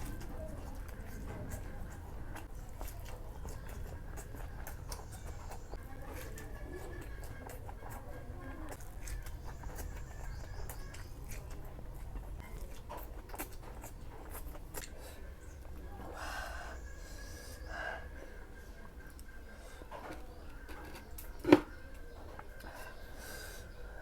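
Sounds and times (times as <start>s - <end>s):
person chewing: 0.0s - 15.8s.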